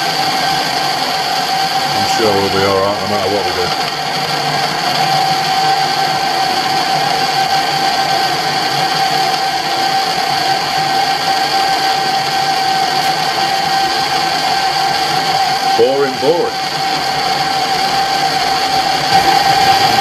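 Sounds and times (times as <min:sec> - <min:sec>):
lathe running: 0:00.0 - 0:20.0
constant high tone: 0:01.9 - 0:03.9, 0:15.8 - 0:16.6.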